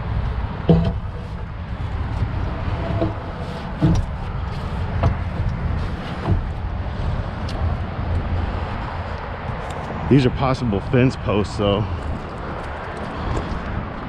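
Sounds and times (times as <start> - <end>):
steady low rumble: 0.0 - 14.0
wooden boards knocking: 0.4 - 6.6.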